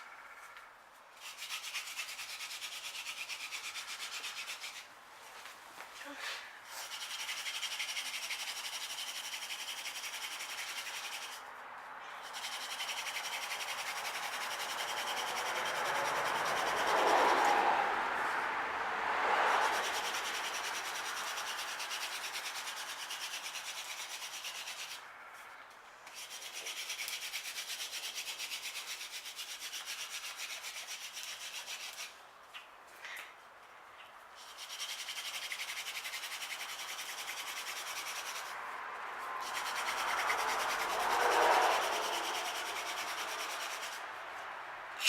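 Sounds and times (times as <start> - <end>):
hand drill rubbing on wood: 1.2 - 4.9, 6.7 - 11.5, 12.2 - 17.6, 19.6 - 25.0, 26.1 - 32.2, 34.4 - 38.6, 39.2 - 44.1.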